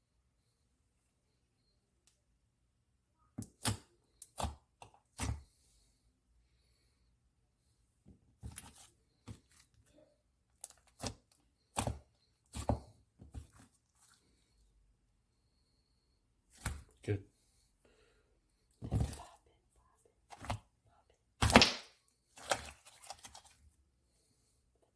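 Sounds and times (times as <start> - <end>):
slime clicking and popping: 21.4 - 22.0.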